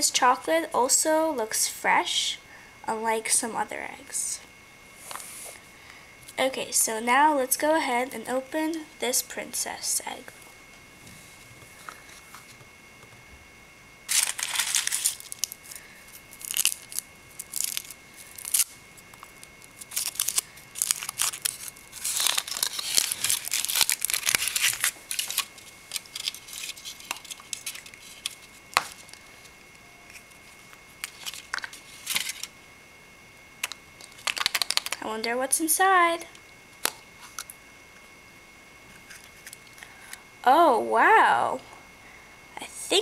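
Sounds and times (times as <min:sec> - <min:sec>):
foil wrapper tearing and crinkling: 0:14.1 - 0:29.2, 0:30.1 - 0:32.5, 0:33.6 - 0:35.0.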